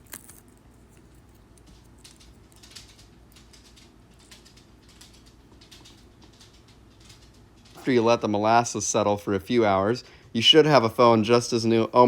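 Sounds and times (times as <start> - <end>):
adhesive tape rustling: 0.0 - 6.8.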